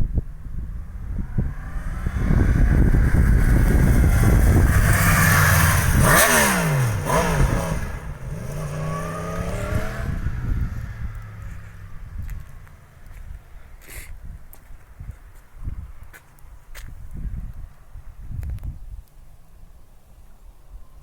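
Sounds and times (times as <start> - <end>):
motorcycle passing by: 0.4 - 13.4.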